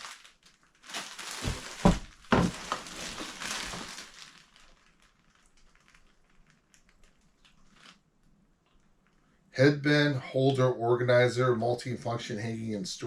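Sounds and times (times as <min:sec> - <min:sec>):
packaging crinkling: 0:00.0 - 0:09.2.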